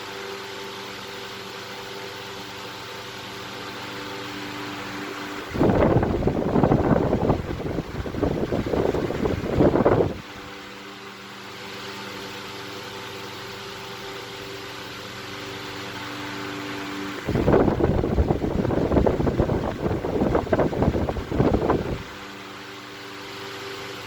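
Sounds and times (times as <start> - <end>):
fan air hiss: 0.0 - 24.0
fan motor hum: 0.0 - 24.0
wind buffeting microphone: 5.5 - 10.3, 17.3 - 22.1.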